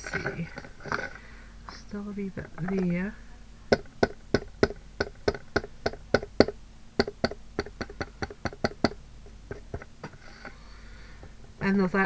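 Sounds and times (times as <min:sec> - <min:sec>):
sharp dabbing taps: 0:02.4 - 0:03.0, 0:03.7 - 0:10.5.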